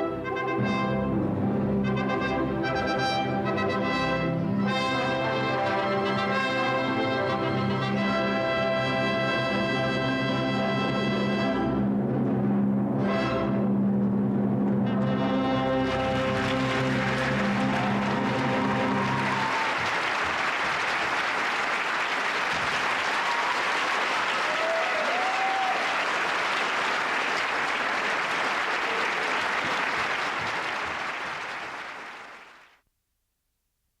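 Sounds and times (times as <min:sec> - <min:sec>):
audience applauding: 0:15.8 - 0:32.8.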